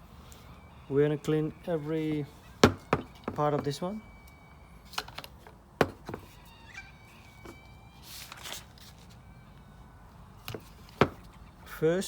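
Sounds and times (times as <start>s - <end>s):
plastic parts clicking and tapping: 2.6s - 6.2s.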